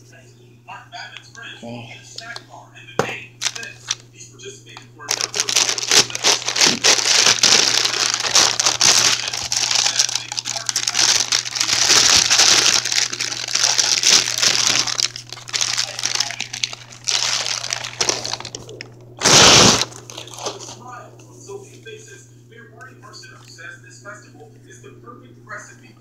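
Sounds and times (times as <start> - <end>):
packaging crinkling and rustling: 3.4 - 4.0, 5.1 - 20.8.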